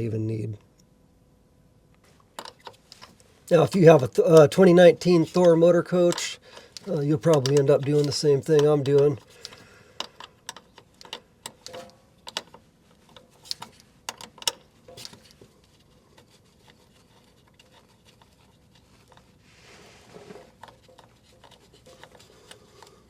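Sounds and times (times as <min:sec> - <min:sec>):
tools clicking and tapping: 0:02.3 - 0:15.5, 0:20.4 - 0:23.0
soft rubbing scrape: 0:15.5 - 0:23.0.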